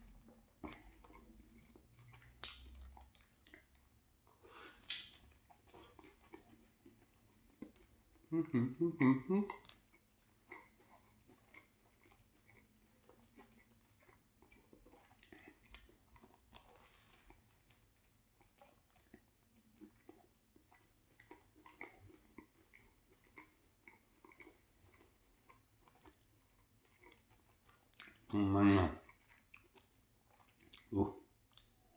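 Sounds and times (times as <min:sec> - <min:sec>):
chewing sandwich: 0:00.0 - 0:31.9
mouth clicks: 0:04.6 - 0:05.2.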